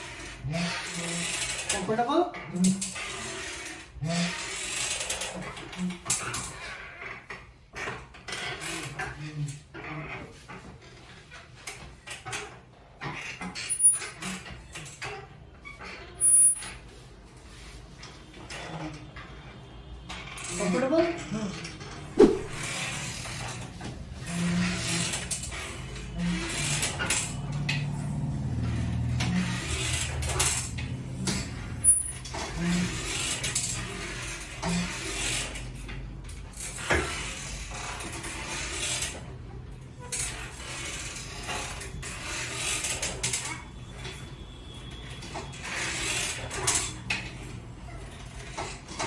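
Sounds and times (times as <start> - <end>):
table knocking and rustling: 22.2 - 22.6
low mechanical hum with pulses: 23.8 - 33.9.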